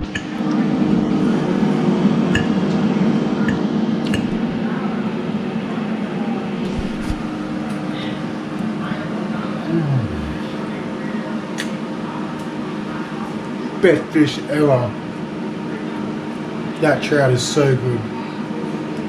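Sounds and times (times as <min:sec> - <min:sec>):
steady low hum: 0:00.0 - 0:11.4
person chewing: 0:06.7 - 0:07.6, 0:09.7 - 0:10.4.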